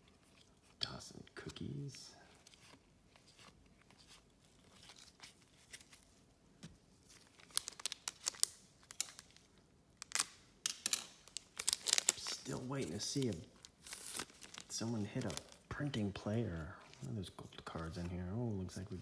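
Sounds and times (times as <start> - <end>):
wrapper tearing and crinkling: 7.1 - 15.8.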